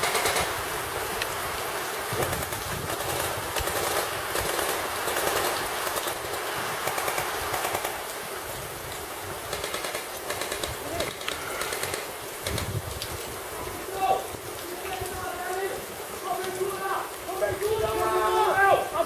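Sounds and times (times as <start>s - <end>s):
airsoft guns firing: 0.0s - 0.5s, 9.5s - 12.6s.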